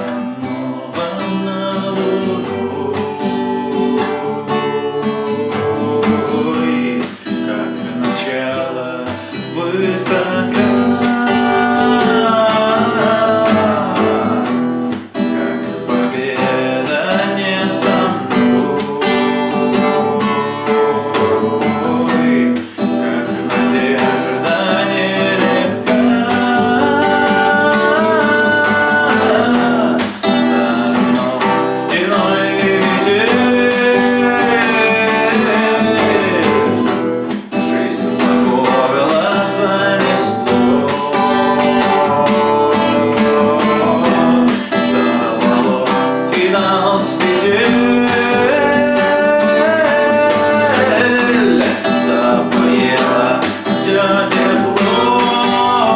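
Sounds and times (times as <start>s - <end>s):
acoustic guitar strumming: 0.0s - 55.9s
man singing: 0.0s - 55.9s.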